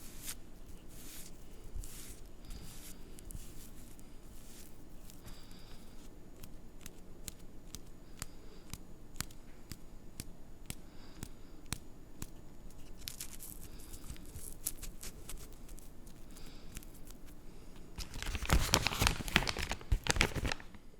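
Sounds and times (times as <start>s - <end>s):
paper and tobacco rustling: 0.0s - 9.8s, 10.7s - 17.4s, 18.0s - 20.8s.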